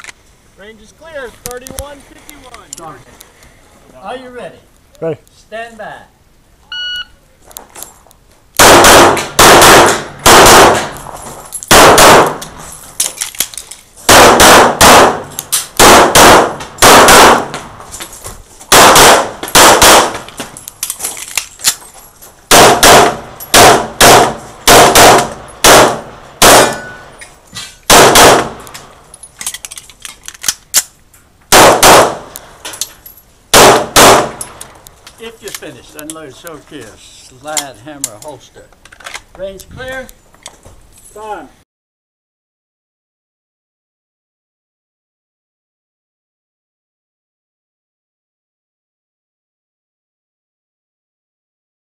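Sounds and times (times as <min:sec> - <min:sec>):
shot timer beep: 0:06.7 - 0:07.2
pistol firing rapid shots: 0:08.6 - 0:11.0, 0:11.7 - 0:12.4, 0:14.1 - 0:17.6, 0:18.7 - 0:20.2, 0:22.5 - 0:26.8, 0:27.9 - 0:28.6, 0:31.5 - 0:32.3, 0:33.5 - 0:34.4.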